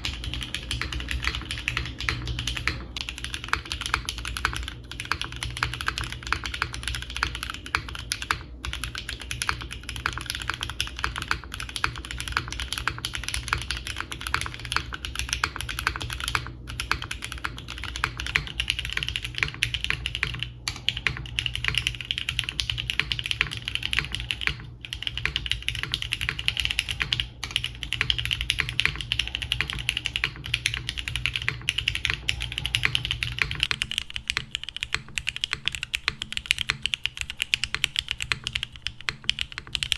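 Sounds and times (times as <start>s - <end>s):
fast typing on mechanical keyboard: 0.0s - 39.9s
steady low hum: 0.0s - 39.9s.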